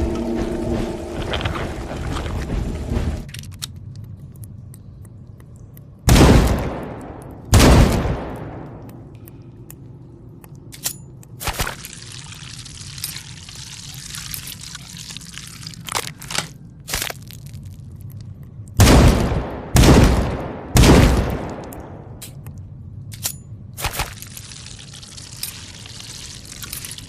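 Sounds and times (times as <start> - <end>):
sniper rifle shots: 18.8 - 21.7.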